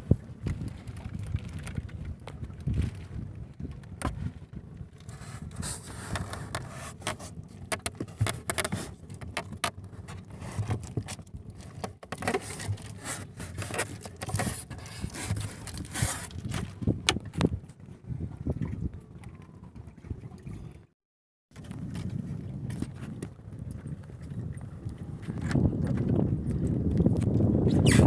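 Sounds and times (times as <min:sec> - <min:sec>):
fishing gear scraping and clicking: 0:05.0 - 0:17.5.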